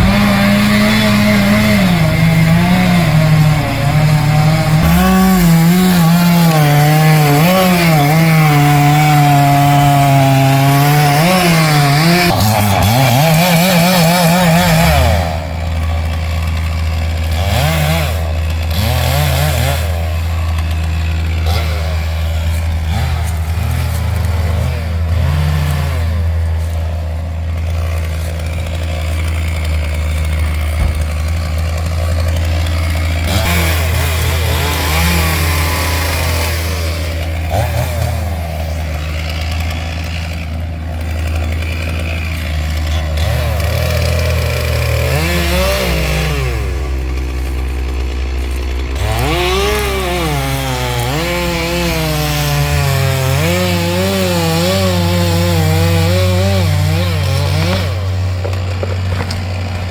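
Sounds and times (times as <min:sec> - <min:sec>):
chainsaw running and cutting: 0:00.0 - 0:59.9
low engine drone: 0:29.9 - 0:32.7.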